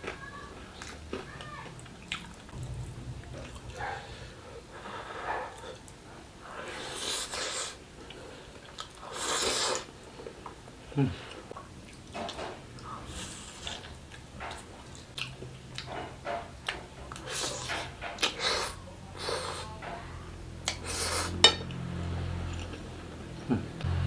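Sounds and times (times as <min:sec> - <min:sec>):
wet chewing: 0:00.0 - 0:02.6, 0:11.2 - 0:19.5.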